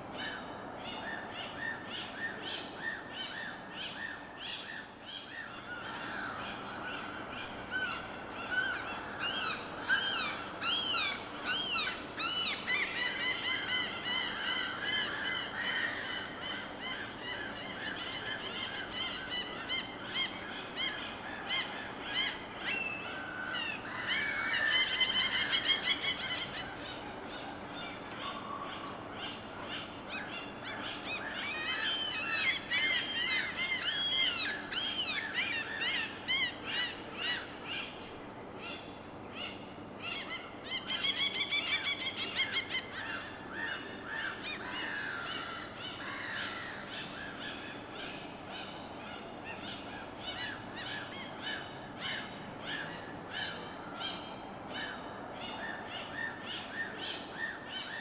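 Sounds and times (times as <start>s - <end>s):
birds chirping and trilling: 1.0s - 38.0s.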